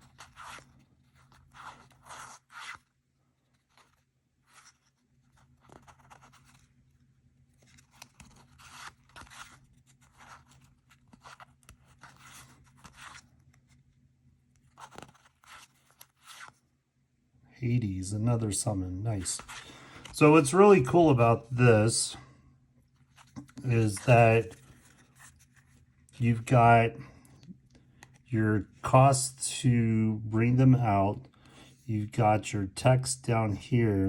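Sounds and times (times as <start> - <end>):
trading cards rustling: 7.5 - 13.8, 14.6 - 16.6, 17.7 - 22.2, 23.0 - 29.8
faint steady hum: 16.6 - 34.0.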